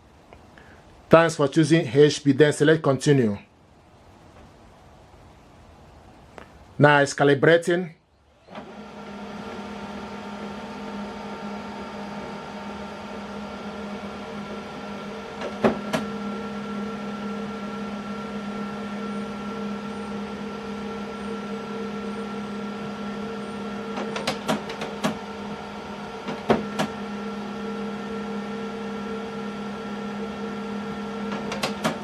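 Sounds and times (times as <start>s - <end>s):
printer motor hum: 8.3s - 32.0s
printer mechanism clicks: 23.9s - 25.2s, 26.2s - 27.0s, 31.2s - 32.0s.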